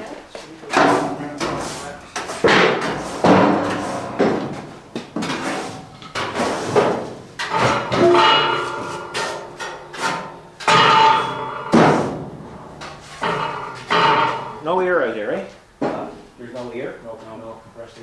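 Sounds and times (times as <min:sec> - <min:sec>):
hammer striking steel: 0:07.4 - 0:14.6.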